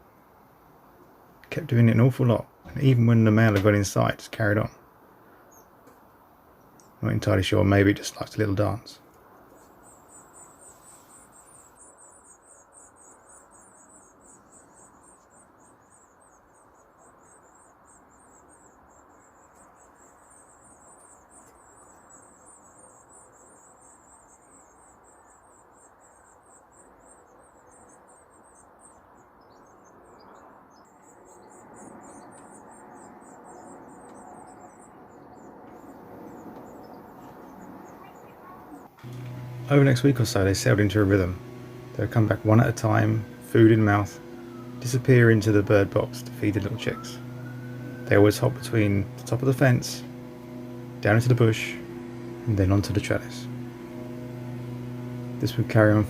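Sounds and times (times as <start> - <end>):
outdoor background hiss: 0.0 - 56.0
high-pitched songbird chirps: 39.7 - 56.0.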